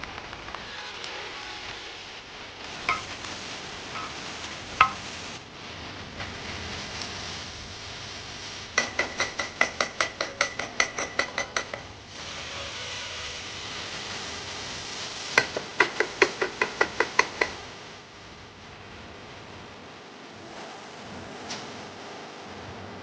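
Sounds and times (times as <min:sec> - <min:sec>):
steady hiss: 0:00.0 - 0:23.0
kitchen utensil striking: 0:02.9 - 0:03.1, 0:04.8 - 0:05.1.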